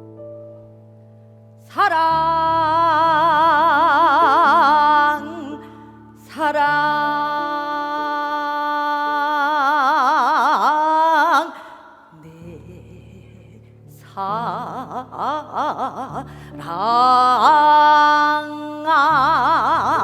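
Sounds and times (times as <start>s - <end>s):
keyboard accompaniment: 0.0s - 9.2s.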